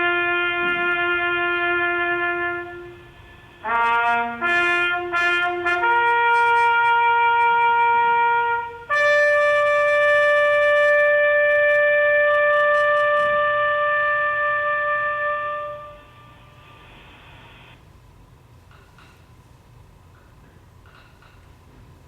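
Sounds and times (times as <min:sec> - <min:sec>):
solo trumpet bugle call: 0:00.0 - 0:16.9.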